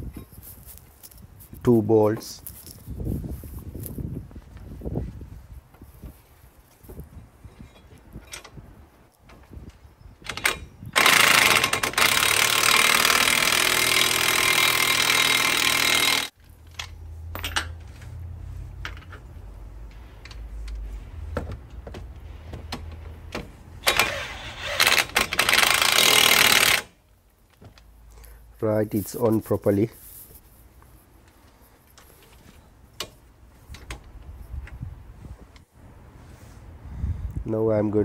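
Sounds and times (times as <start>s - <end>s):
impact wrench hammering bolts: 10.2s - 17.8s, 21.8s - 27.0s.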